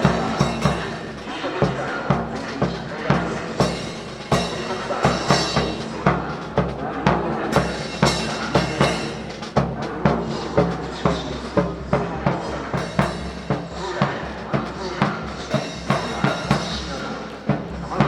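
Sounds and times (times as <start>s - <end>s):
drum kit beat: 0.0s - 18.0s.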